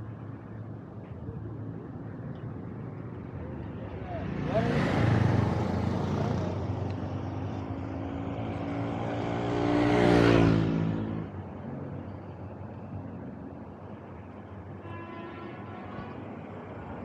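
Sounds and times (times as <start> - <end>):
street traffic noise: 0.0 - 17.0
faint engine: 0.4 - 14.0
vehicle passing close by: 4.1 - 11.3.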